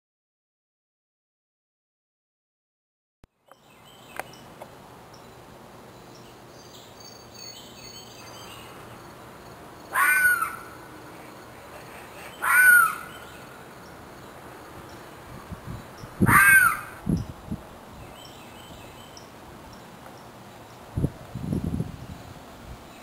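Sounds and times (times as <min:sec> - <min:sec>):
harsh animal calls: 0:09.9 - 0:13.4, 0:16.2 - 0:17.0.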